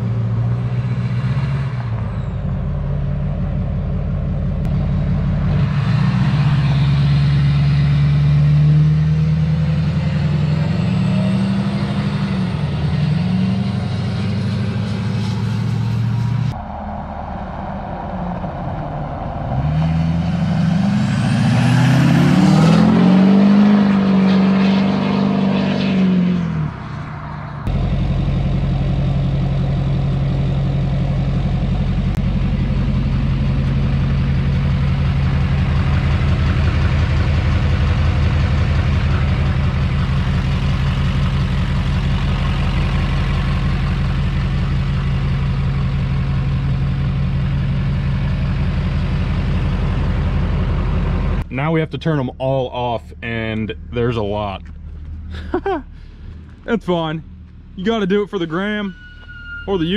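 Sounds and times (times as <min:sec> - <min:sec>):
diesel engine revving: 0:00.0 - 0:59.9
turbo whistle: 0:58.6 - 0:59.9.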